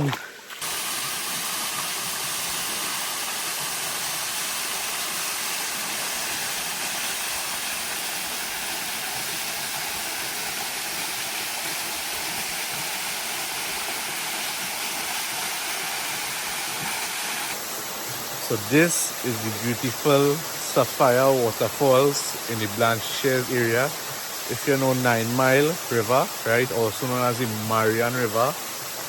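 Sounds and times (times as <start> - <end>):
waterfall pouring: 0.0 - 29.0.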